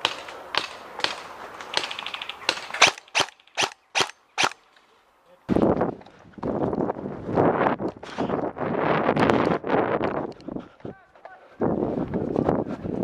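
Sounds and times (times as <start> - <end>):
airsoft gun shots: 1.8 - 4.6.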